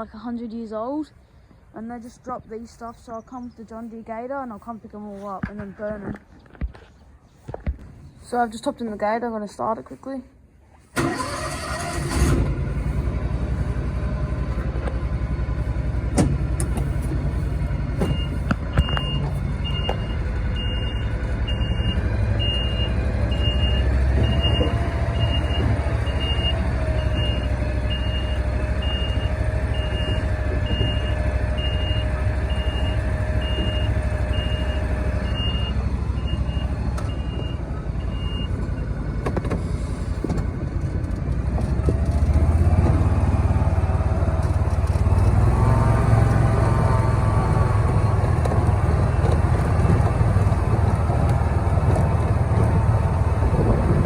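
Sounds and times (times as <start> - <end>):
utility vehicle engine running: 11.0 - 54.0
reverse alarm beeping: 18.0 - 38.6.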